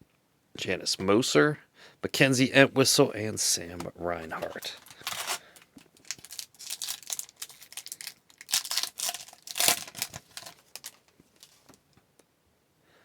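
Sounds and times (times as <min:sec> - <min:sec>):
card packs crinkling and rustling: 0:03.6 - 0:11.8.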